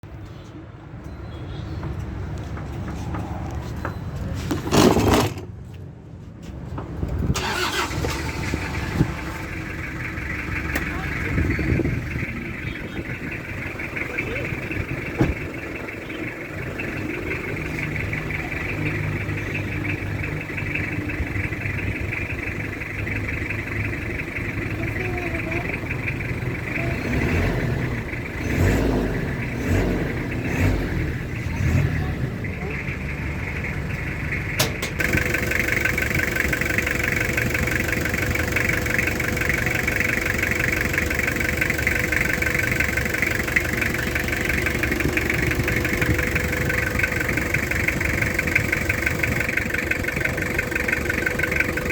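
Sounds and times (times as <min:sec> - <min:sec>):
engine running and surging: 0:06.8 - 0:51.9.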